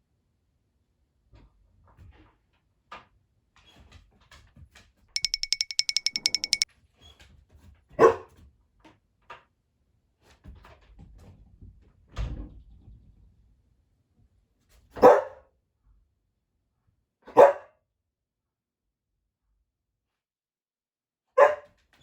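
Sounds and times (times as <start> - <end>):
dog barking: 8.0 - 8.3, 15.0 - 15.4, 17.4 - 17.7, 21.4 - 21.6.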